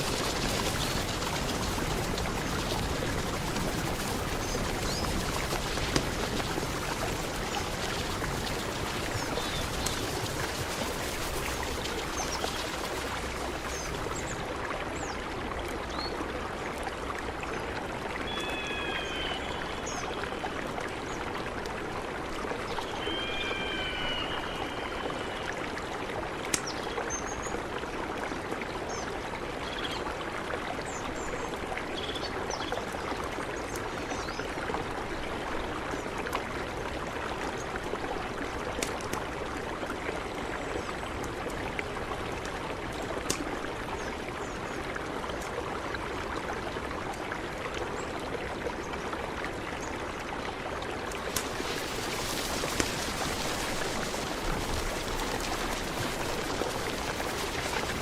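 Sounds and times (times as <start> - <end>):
river water rushing: 0.0 - 26.5, 37.0 - 58.0
multi-note bird calls: 18.3 - 20.2, 22.8 - 25.5.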